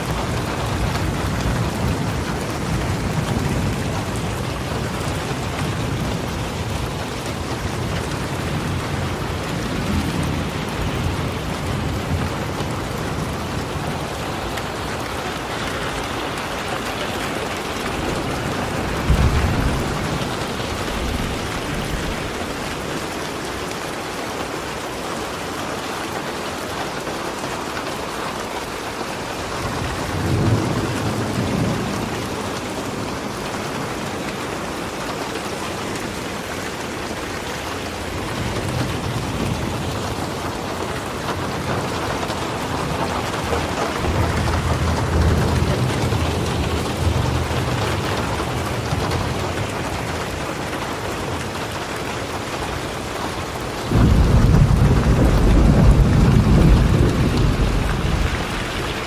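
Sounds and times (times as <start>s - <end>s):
low rumbles of thunder: 0.0s - 23.0s, 29.5s - 34.2s, 38.0s - 50.5s, 53.8s - 59.0s
steady rainfall: 0.0s - 59.0s.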